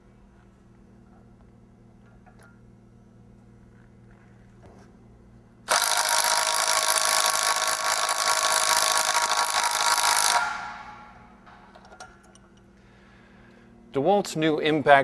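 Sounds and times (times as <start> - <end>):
power drill cutting: 5.7 - 10.9.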